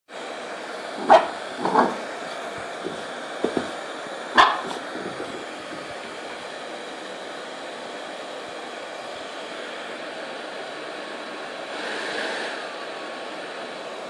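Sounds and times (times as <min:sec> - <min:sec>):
hair dryer running: 0:00.1 - 0:14.0
dog barking: 0:01.0 - 0:02.1, 0:04.4 - 0:04.8
dog woofing softly: 0:01.0 - 0:03.7.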